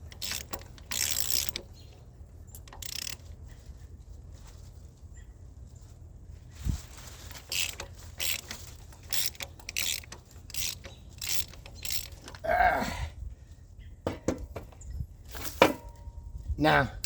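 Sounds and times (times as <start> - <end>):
ratchet wrench clicking: 0.0 - 1.8, 2.5 - 3.2, 7.5 - 12.4.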